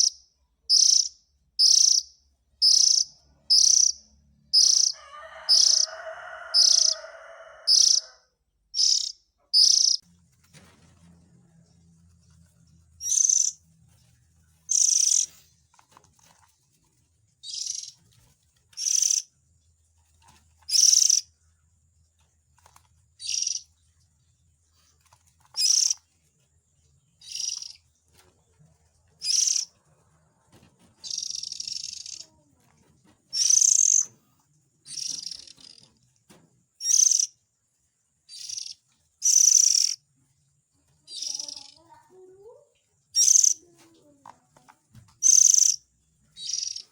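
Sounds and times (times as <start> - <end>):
bird harsh rasping calls: 0.0 - 4.0, 4.6 - 8.2, 8.8 - 10.0, 13.0 - 13.6, 14.7 - 15.4, 17.4 - 18.0, 18.8 - 19.3, 20.7 - 21.3, 23.2 - 23.7, 25.6 - 26.0, 27.2 - 27.8, 29.2 - 29.7, 31.0 - 32.3, 33.3 - 34.1, 34.9 - 35.9, 36.8 - 37.4, 38.3 - 40.0, 41.1 - 42.0, 43.2 - 43.6, 45.2 - 45.8, 46.4 - 46.9.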